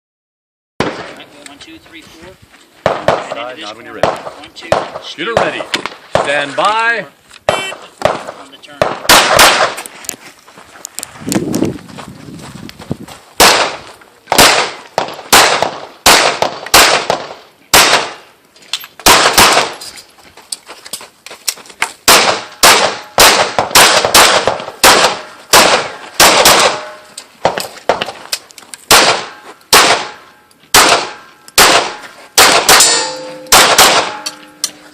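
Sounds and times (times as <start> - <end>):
pistol shots: 2.8 - 3.4, 7.5 - 9.8, 13.4 - 18.3, 19.0 - 19.8, 22.0 - 28.0, 28.9 - 34.4
steel targets ringing: 32.7 - 34.9.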